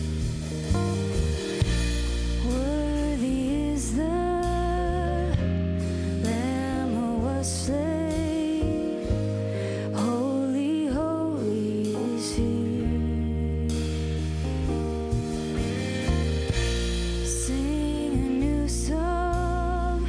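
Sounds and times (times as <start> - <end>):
worship band playing slow song: 0.0 - 20.0
person singing: 2.4 - 14.4, 17.3 - 20.0.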